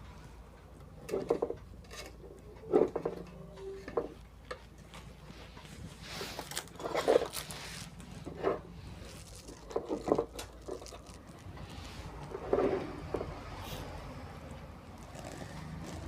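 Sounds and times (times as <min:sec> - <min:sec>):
handling clicks and scrapes: 0:01.0 - 0:16.0.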